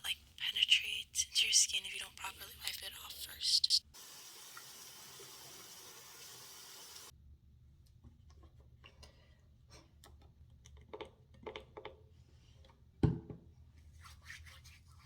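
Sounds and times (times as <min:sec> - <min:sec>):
tap water running: 0:03.9 - 0:07.1.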